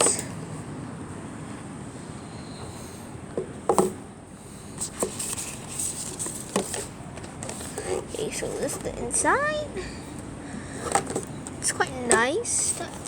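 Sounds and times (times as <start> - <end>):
packaging rustling: 4.8 - 9.0, 10.8 - 11.7.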